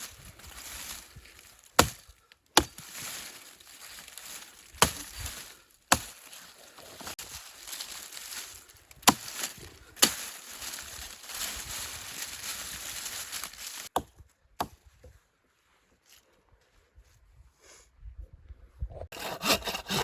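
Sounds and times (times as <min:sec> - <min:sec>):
rough rustling: 0:00.0 - 0:14.0
axe chopping wood: 0:01.7 - 0:06.4, 0:09.0 - 0:10.8, 0:13.4 - 0:14.8.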